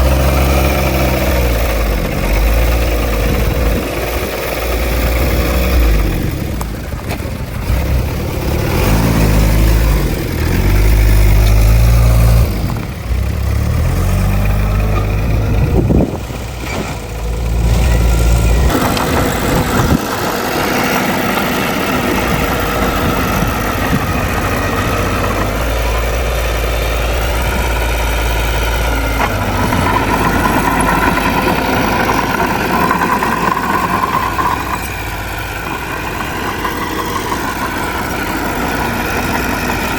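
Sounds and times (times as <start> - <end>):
heavy diesel engines working: 0.0 - 39.9.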